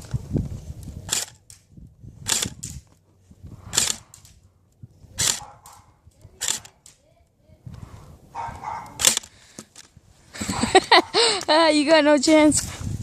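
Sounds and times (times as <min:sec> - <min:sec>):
airsoft gun shots: 0:03.7 - 0:04.2, 0:05.2 - 0:05.8, 0:08.9 - 0:09.3.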